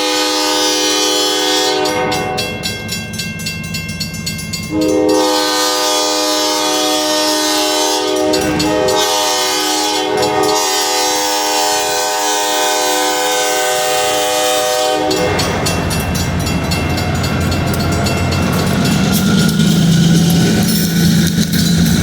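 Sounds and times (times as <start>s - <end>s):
locomotive horn blast: 0.0s - 2.7s, 4.7s - 15.9s
train rumbling: 0.0s - 22.0s
train wheels clicking on rails: 1.0s - 22.0s.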